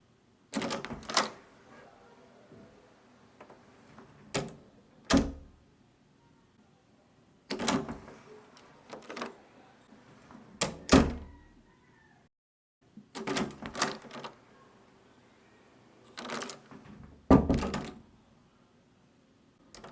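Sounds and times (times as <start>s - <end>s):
door handle and latch clicks: 0.5s - 1.4s, 4.3s - 5.5s, 10.6s - 11.3s
low door thud: 16.8s - 18.0s.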